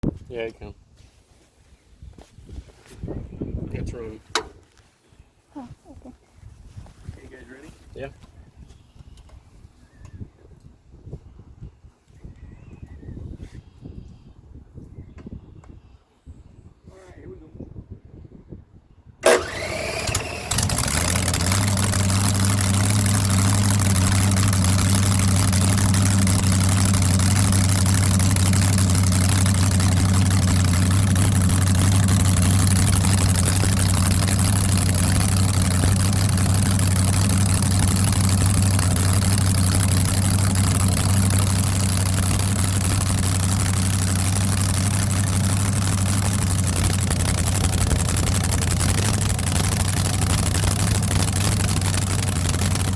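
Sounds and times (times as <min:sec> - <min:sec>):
ignition click: 0:19.2 - 0:21.5
engine cranking with starter whine: 0:19.2 - 0:52.9
engine idling: 0:19.2 - 0:52.9.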